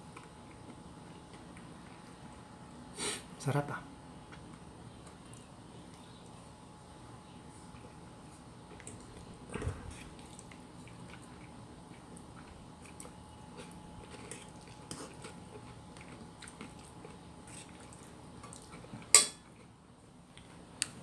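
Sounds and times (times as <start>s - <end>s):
person chewing: 8.7s - 19.7s.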